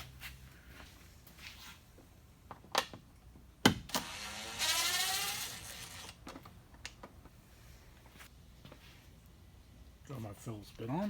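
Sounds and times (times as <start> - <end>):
power drill motor whine: 4.0 - 6.2.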